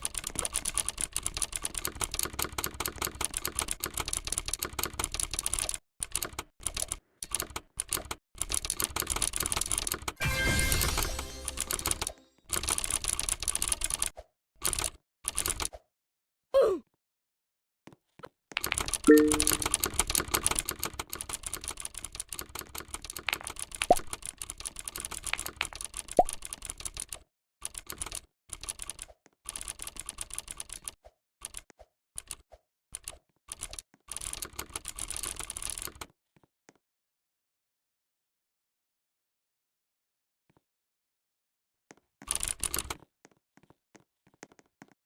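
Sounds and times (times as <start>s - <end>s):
fast typing on keyboard: 0.0s - 15.8s, 18.5s - 32.4s, 33.0s - 36.2s, 42.2s - 43.1s.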